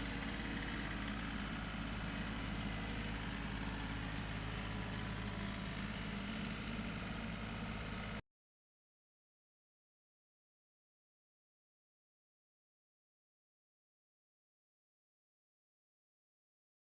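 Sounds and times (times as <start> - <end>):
tractor engine running: 0.0 - 8.2.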